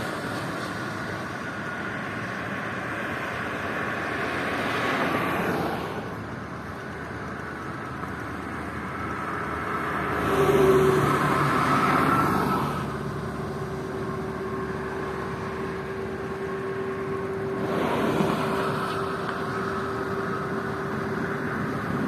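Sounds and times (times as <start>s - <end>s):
traffic passing: 0.0s - 22.0s
vehicle passing close: 7.3s - 22.0s.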